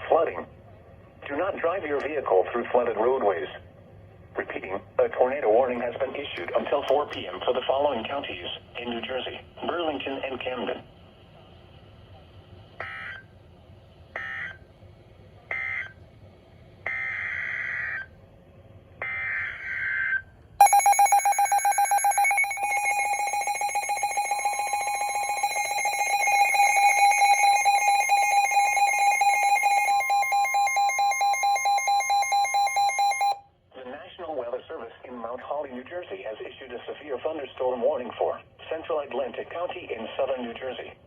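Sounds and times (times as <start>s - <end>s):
rapidly pulsing radio alarm: 12.8s - 13.3s, 14.1s - 14.6s, 15.5s - 16.0s, 16.8s - 18.1s, 19.0s - 33.4s.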